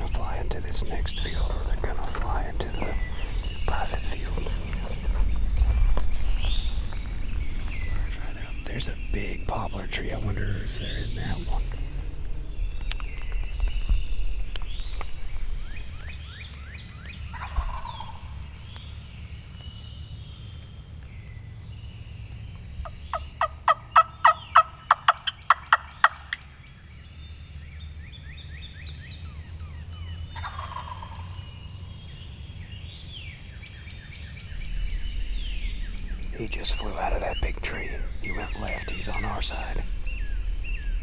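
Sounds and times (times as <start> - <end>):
songbirds chirping: 0.0 - 41.0
wild turkey gobbling: 17.3 - 18.4, 22.8 - 26.4, 30.3 - 32.0, 36.3 - 39.9.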